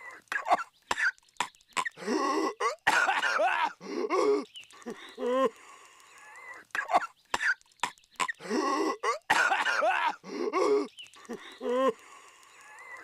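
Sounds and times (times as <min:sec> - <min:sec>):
cartoon character coughing: 0:00.3 - 0:01.2, 0:01.8 - 0:04.5, 0:06.8 - 0:07.6, 0:08.2 - 0:10.9.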